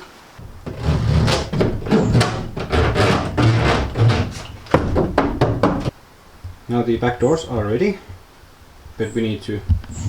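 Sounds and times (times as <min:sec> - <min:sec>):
knocking on sheet metal panels: 0:00.4 - 0:06.0.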